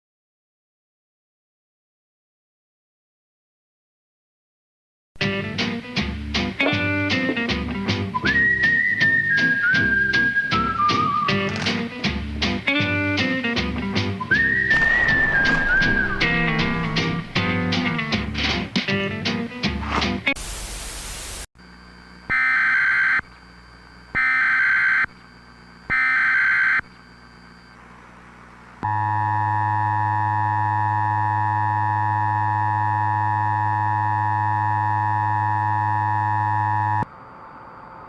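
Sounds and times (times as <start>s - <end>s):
music: 5.2s - 20.4s
static hiss: 14.7s - 18.9s, 19.8s - 22.0s.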